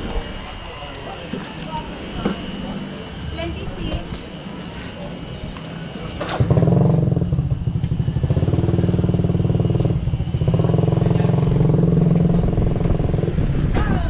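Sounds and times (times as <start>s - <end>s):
motorcycle engine running: 6.0s - 13.8s.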